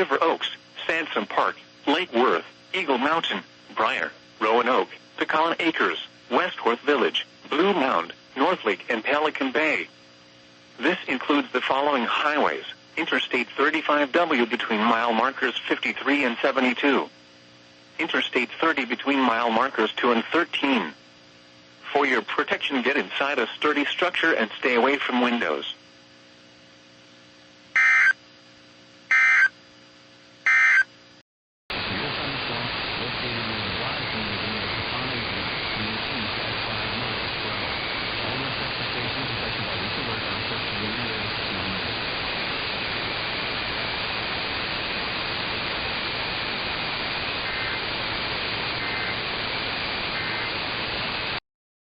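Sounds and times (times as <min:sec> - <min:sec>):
radio static hiss: 0:00.0 - 0:28.2, 0:31.7 - 0:51.4
faint constant whistle: 0:27.8 - 0:28.2, 0:29.1 - 0:29.6, 0:30.5 - 0:30.9, 0:32.0 - 0:41.6
harsh digital warble bursts: 0:27.8 - 0:28.2, 0:29.1 - 0:29.5, 0:47.0 - 0:48.1, 0:48.7 - 0:49.4, 0:50.0 - 0:50.6
short faint data bursts: 0:45.4 - 0:51.2.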